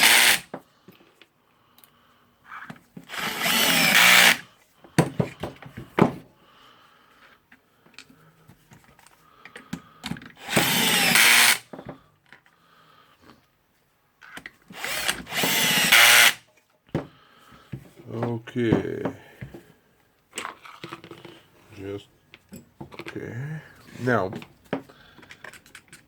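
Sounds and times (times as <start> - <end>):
electric screwdriver running: 0.0 - 0.5, 3.1 - 4.4, 10.4 - 11.7, 14.7 - 16.4.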